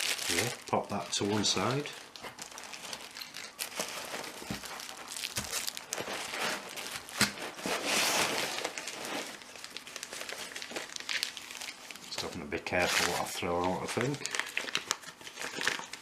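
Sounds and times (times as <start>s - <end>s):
packing material crinkling: 0.0s - 16.0s.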